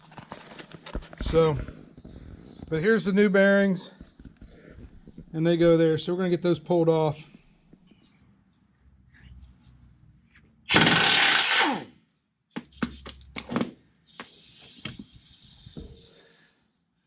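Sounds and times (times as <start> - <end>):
air impact wrench bursts: 10.7 - 11.9, 14.1 - 16.4.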